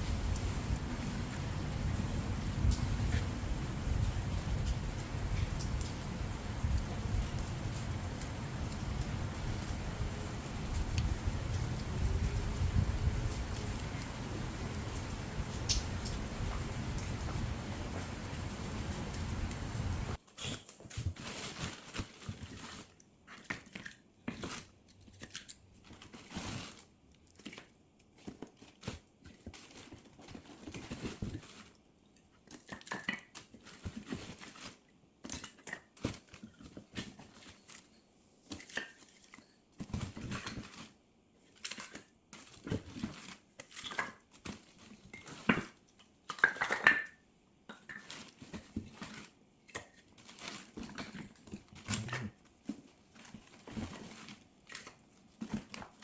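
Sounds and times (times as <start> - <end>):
firewood crackling and popping: 0.0 - 20.2.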